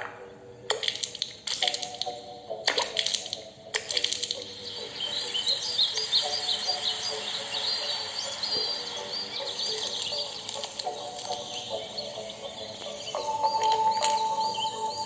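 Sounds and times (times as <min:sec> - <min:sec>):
birds chirping: 0:03.3 - 0:15.0
held low tones: 0:04.4 - 0:15.0.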